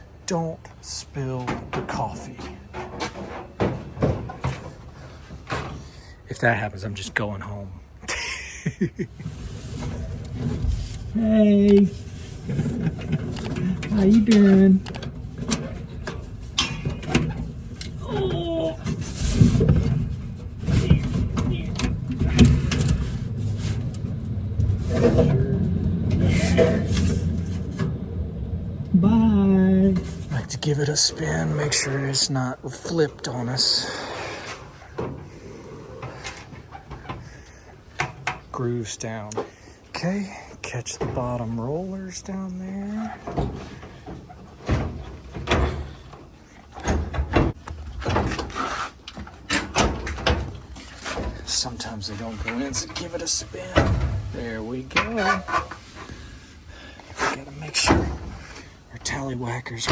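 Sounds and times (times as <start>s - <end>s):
engine rumbling: 0.0s - 59.9s
metal clunks and scraping: 0.0s - 59.9s.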